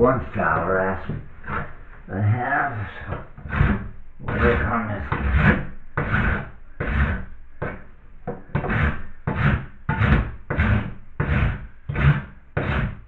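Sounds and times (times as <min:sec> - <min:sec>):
person talking: 0:00.0 - 0:01.2, 0:02.1 - 0:03.2, 0:04.2 - 0:05.3
hand rasp scraping filler: 0:00.0 - 0:13.0.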